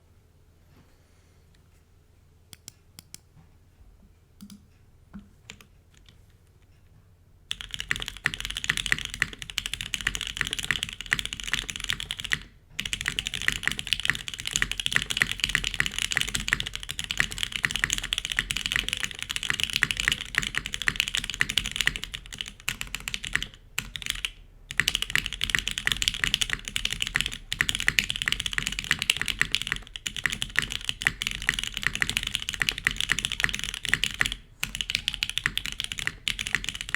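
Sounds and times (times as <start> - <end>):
clacky mechanical keyboard typing: 7.5 - 36.9.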